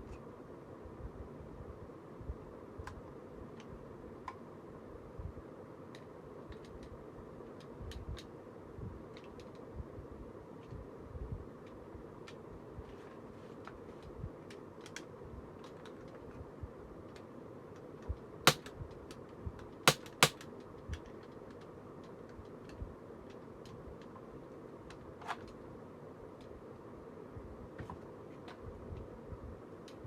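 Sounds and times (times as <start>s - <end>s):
airgun clicks: 18.5s - 18.7s, 19.9s - 20.4s
loud airgun snaps: 18.5s - 18.7s, 19.9s - 20.4s.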